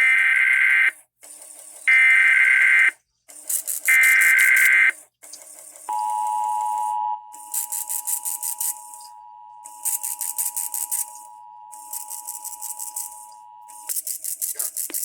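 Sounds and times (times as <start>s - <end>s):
buzzy digital data bursts: 3.5s - 4.9s, 7.4s - 15.0s
faint steady tone: 5.9s - 13.9s.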